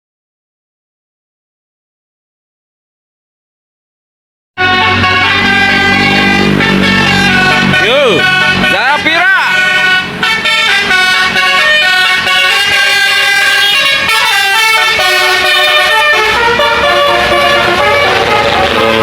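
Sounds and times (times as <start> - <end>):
musical air horns playing a tune: 4.6 - 19.0.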